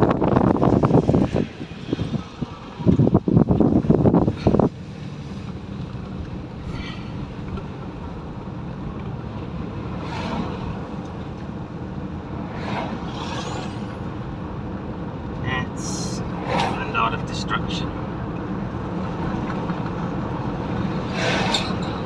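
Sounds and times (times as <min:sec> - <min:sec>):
car engine and tyre hum: 0:00.0 - 0:22.0
brief whooshes: 0:12.4 - 0:14.2, 0:21.0 - 0:21.8.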